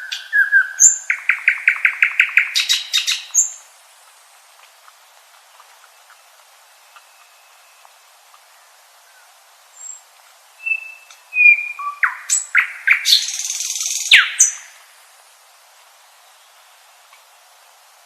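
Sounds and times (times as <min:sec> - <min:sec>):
nightingale singing: 0:00.0 - 0:03.7, 0:05.8 - 0:14.9.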